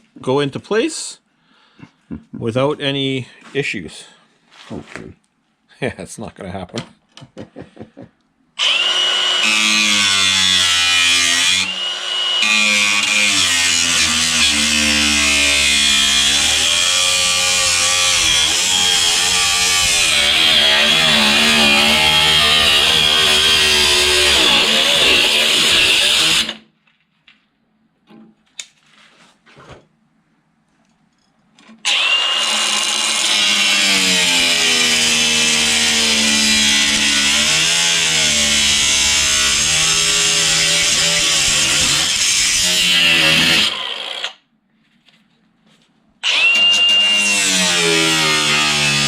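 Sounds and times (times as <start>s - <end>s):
cut-off wheel cutting sheet metal: 8.6s - 26.6s, 31.9s - 44.4s, 46.2s - 49.0s.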